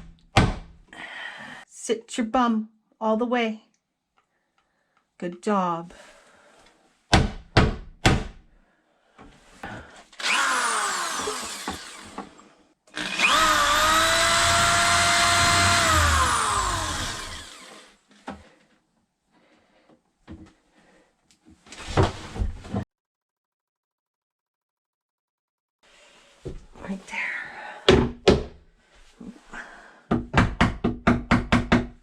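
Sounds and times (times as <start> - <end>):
small power tool motor: 10.2 - 18.0.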